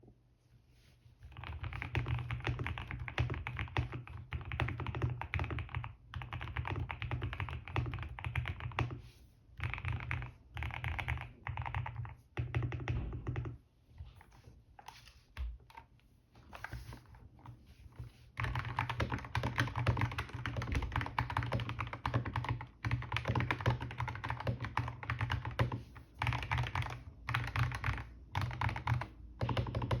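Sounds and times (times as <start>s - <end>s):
mechanical keyboard typing: 1.3s - 9.0s, 9.6s - 13.6s, 18.4s - 30.0s.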